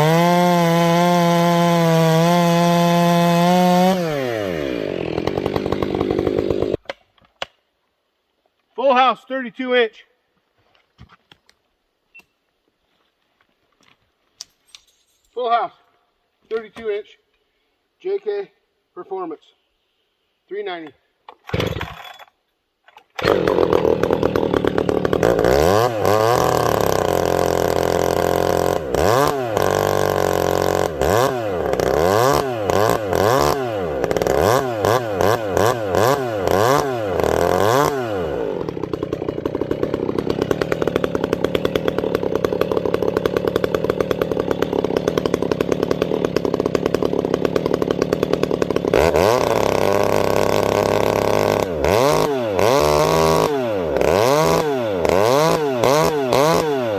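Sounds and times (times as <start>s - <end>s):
chainsaw revving: 0.0s - 6.8s, 21.4s - 22.3s, 23.2s - 56.9s.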